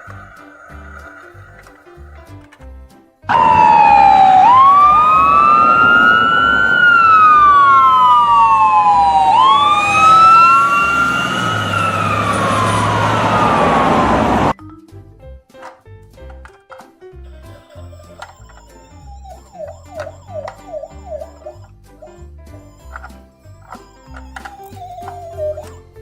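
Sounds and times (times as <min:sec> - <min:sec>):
emergency vehicle siren wailing: 0:03.3 - 0:14.6, 0:18.2 - 0:21.6, 0:23.6 - 0:25.8.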